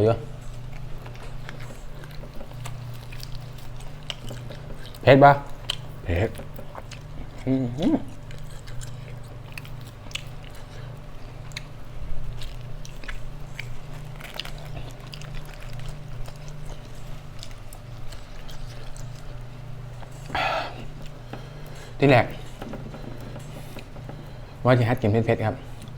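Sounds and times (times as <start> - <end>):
person chewing and biting food: 0.2 - 24.6.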